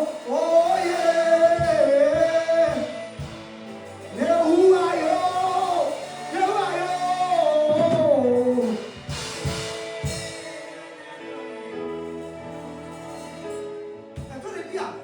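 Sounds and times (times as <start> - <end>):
band holding chords: 0.0 - 15.0
drum hits: 7.6 - 10.6.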